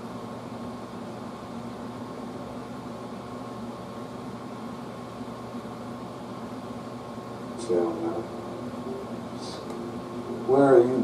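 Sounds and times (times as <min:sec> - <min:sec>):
air conditioner running: 0:00.0 - 0:11.0.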